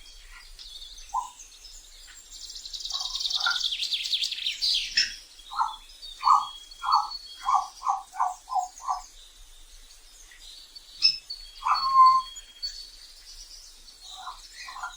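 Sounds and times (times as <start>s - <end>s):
thin high bird chirps: 2.8s - 9.2s, 10.2s - 14.9s
short mid-pitched bird calls: 11.0s - 12.4s.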